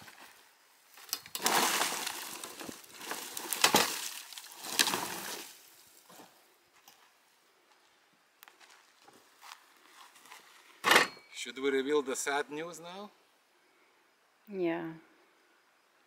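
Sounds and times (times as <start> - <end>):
dry branches crackling and snapping: 0.0 - 5.7.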